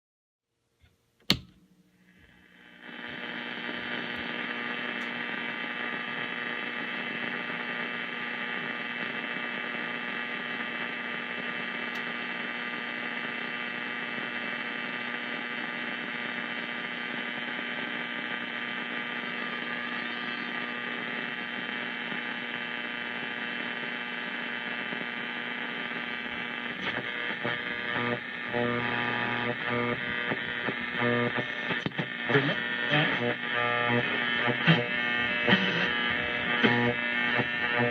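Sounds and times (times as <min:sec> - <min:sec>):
radio switch click: 0:01.2 - 0:02.3, 0:11.9 - 0:12.2
radio static and whine: 0:02.0 - 0:37.9
broken radio signal fragments: 0:02.1 - 0:37.9.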